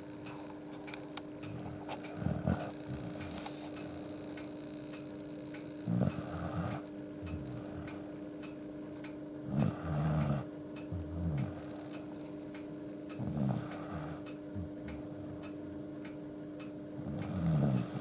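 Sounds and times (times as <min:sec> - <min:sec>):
dog snoring: 0:01.5 - 0:04.1, 0:05.8 - 0:08.1, 0:09.4 - 0:12.0, 0:13.2 - 0:15.5, 0:17.0 - 0:18.0.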